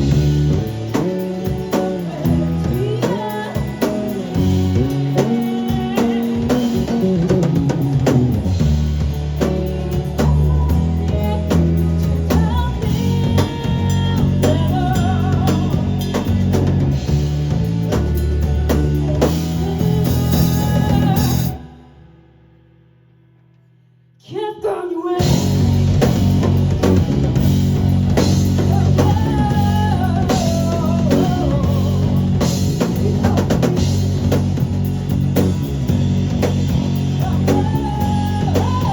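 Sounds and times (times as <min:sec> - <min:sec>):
rock band playing live: 0:00.0 - 0:21.8, 0:25.2 - 0:38.9.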